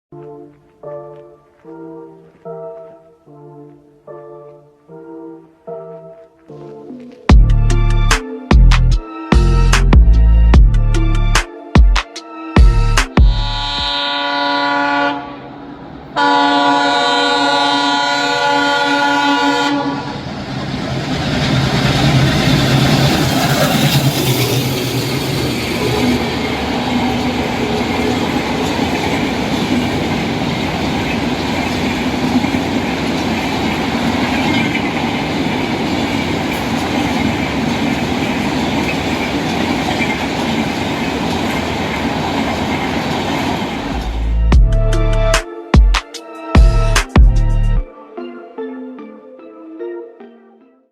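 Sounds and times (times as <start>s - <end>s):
train rumble and wheel clatter: 12.6s - 44.5s
locomotive horn blowing: 13.2s - 15.6s, 16.2s - 20.2s.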